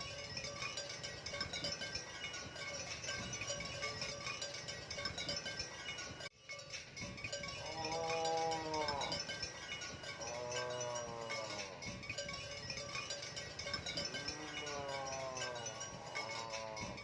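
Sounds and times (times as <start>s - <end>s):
background music with chiming tones: 0.0s - 17.0s
cattle mooing: 7.6s - 9.4s, 10.2s - 11.8s, 14.0s - 17.0s.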